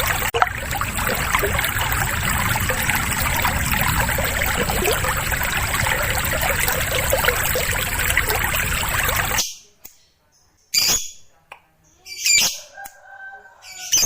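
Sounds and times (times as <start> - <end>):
flowing water rushing: 0.0 - 9.4.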